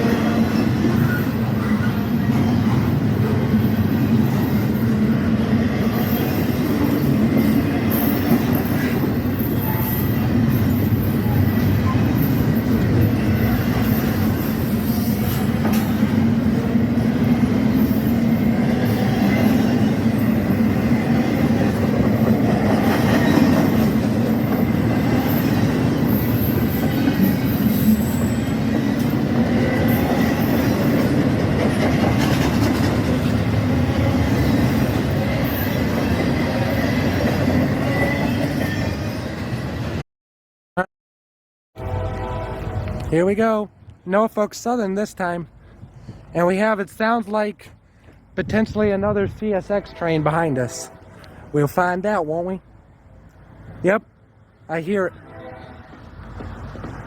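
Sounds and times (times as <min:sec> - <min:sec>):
train wheels rumbling on rails: 0:00.0 - 0:40.0, 0:55.2 - 0:57.0
faint wheel squeal: 0:00.9 - 0:02.6.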